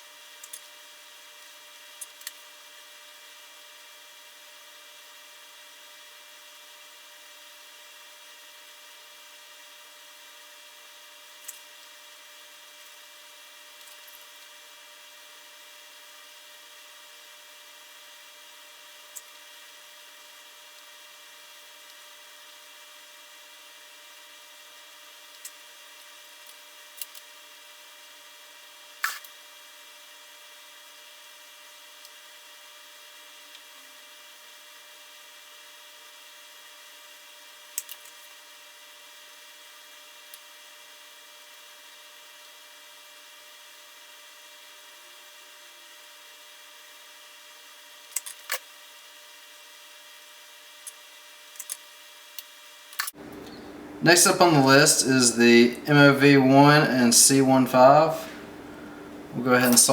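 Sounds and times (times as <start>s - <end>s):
small tools clicking and tapping: 51.6s - 51.8s
faint steady hiss: 53.0s - 59.9s.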